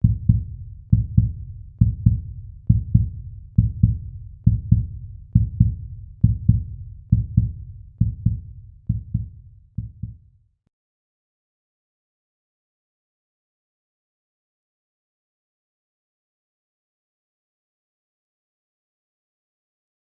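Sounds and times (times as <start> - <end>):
heartbeat ringtone thumps: 0.0 - 10.2.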